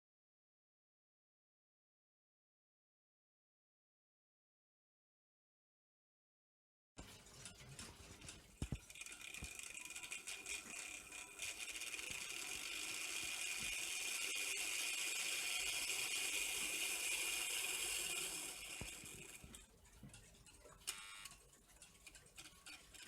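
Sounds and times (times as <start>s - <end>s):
model train motor whirring: 7.0s - 23.0s.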